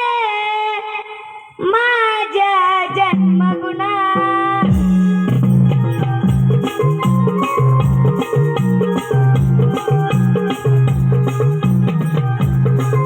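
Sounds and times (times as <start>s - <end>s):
bass line: 4.7s - 13.0s
drum and shaker beat: 4.7s - 13.0s
keyboard playing: 4.7s - 13.0s.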